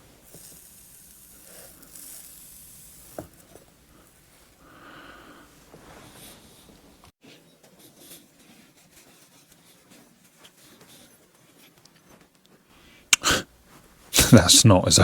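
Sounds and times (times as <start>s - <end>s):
cloth rubbing on pipe: 0.0s - 4.8s, 5.4s - 7.0s, 7.8s - 11.7s.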